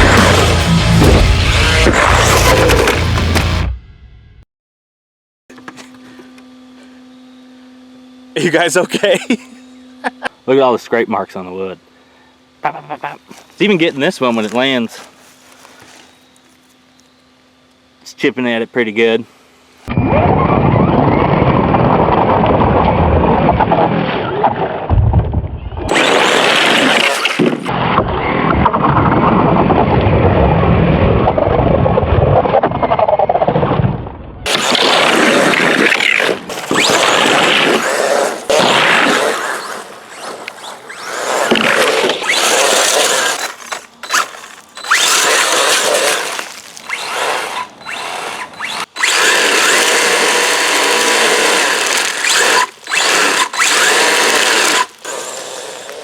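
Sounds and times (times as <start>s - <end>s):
electric motor whine: 0.0s - 3.7s, 25.8s - 28.5s, 34.5s - 56.0s
chain treads scraping ground: 36.2s - 48.7s.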